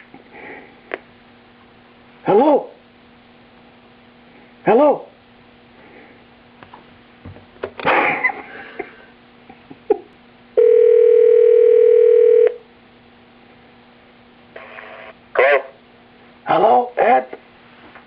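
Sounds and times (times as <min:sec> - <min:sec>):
loud steady telephone tone: 0:10.6 - 0:12.7, 0:14.5 - 0:15.6.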